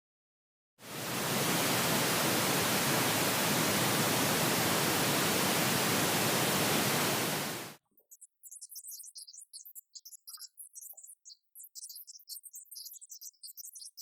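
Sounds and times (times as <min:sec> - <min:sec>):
pink noise test signal: 0:00.8 - 0:07.8.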